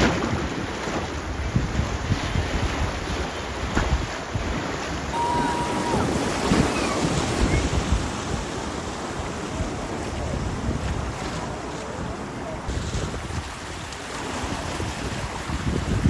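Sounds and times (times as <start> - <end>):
wind buffeting microphone: 0.0 - 16.0
river water rushing: 5.1 - 10.1.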